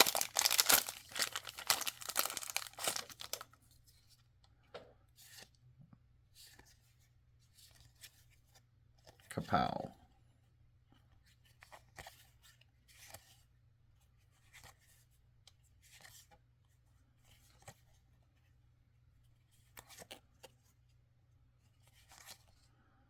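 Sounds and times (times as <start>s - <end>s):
trading cards rustling by hand: 0.0s - 4.3s, 21.6s - 22.7s.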